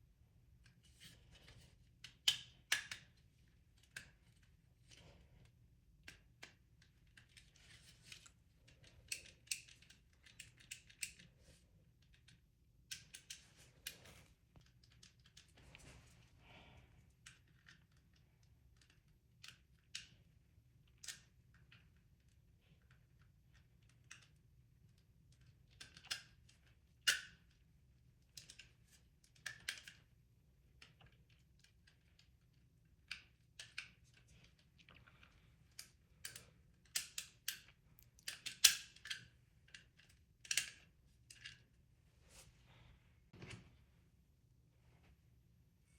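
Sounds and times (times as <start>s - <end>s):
plastic parts clicking together: 6.0s - 11.3s, 33.0s - 41.6s.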